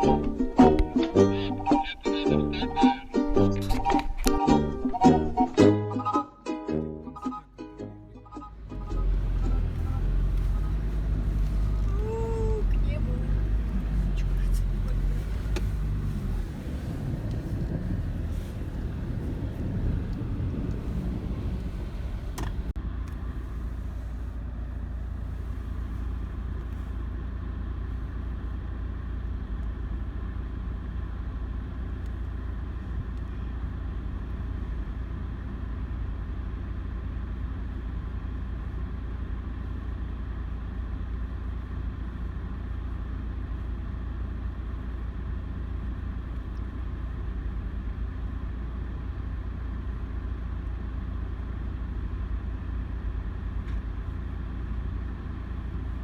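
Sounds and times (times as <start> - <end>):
car engine rumble: 0.0 - 5.8, 7.1 - 56.0
click: 22.3 - 23.2, 33.1 - 33.3.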